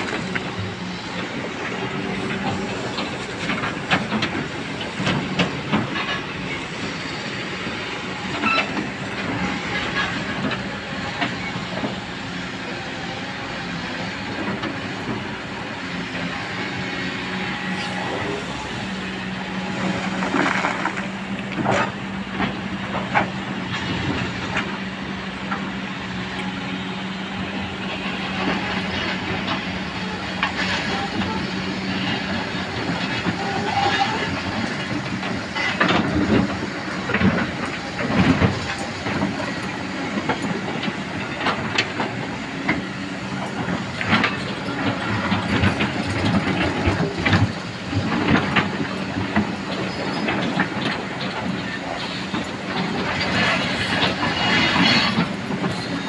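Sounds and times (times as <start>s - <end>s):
excavator diesel engine humming: 0.0s - 56.0s
machine clanks and knocks: 28.3s - 56.0s.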